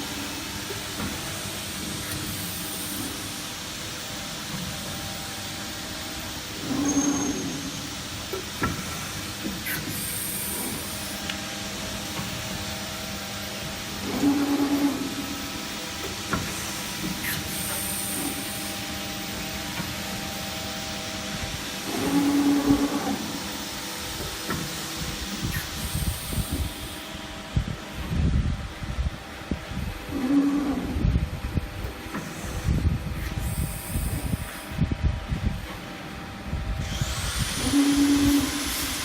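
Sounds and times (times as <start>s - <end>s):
hydraulic press brake humming: 0.0s - 27.5s, 36.8s - 39.0s.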